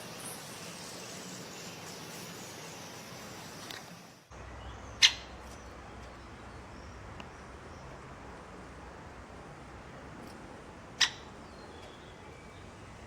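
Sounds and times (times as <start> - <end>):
outdoor hiss: 0.0 - 4.7
bird chirping: 4.3 - 8.0, 11.0 - 13.0.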